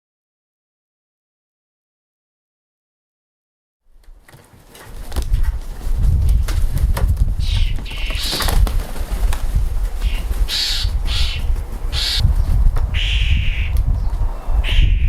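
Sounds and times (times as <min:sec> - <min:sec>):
birds calling: 0:04.6 - 0:15.0.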